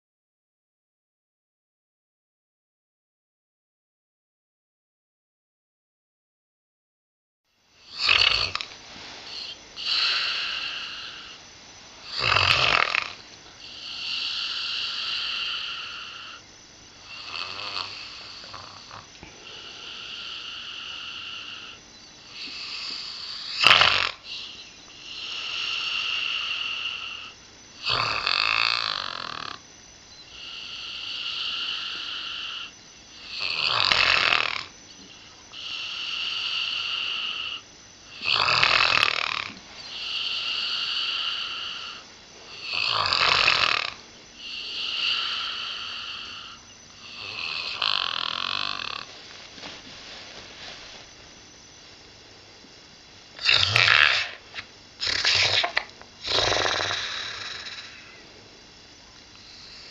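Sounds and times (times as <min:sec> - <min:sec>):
dog snoring with whistle: 0:07.8 - 0:11.4, 0:12.0 - 0:49.1, 0:53.4 - 0:58.3, 0:59.3 - 0:59.9.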